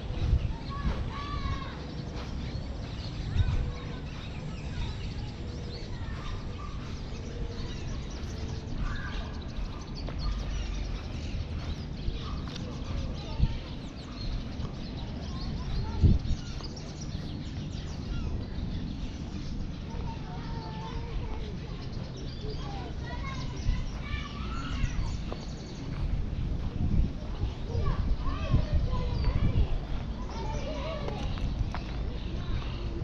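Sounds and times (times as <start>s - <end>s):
birds chirping and calling: 0.0s - 33.0s
steady low rumble: 0.0s - 33.0s.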